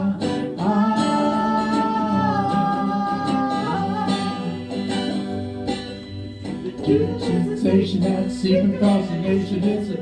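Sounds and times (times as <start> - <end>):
acoustic guitar: 0.0 - 10.0.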